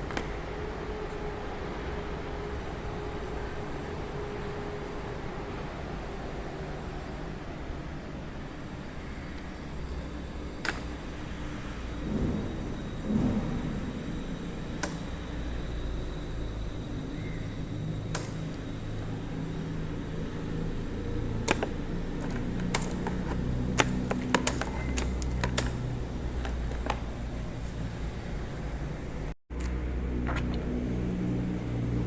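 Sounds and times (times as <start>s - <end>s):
sharp clicks: 18.1s - 18.6s, 21.4s - 25.8s.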